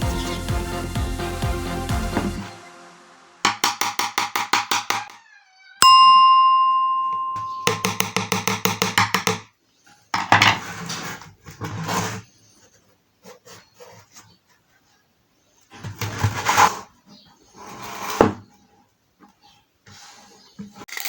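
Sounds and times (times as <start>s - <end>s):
bell-like ding: 5.8s - 8.2s.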